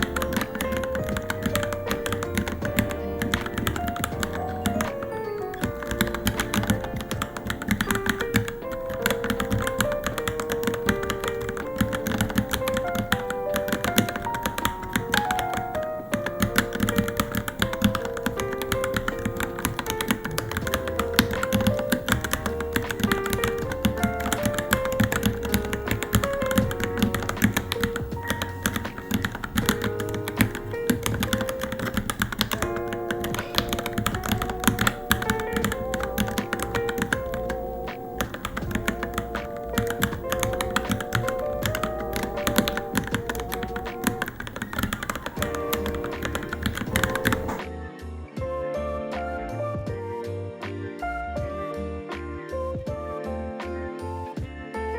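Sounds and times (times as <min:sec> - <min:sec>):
mechanical keyboard typing: 0:00.0 - 0:47.6
background music: 0:00.0 - 0:54.9.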